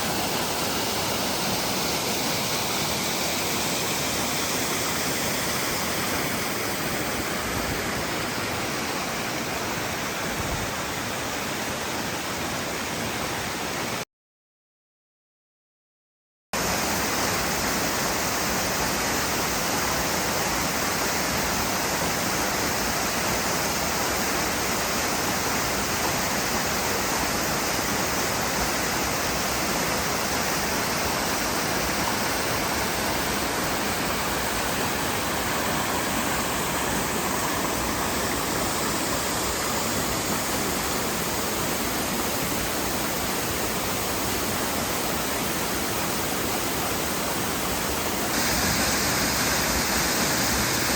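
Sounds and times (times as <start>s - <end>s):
waterfall: 0.0s - 14.1s, 16.6s - 50.9s.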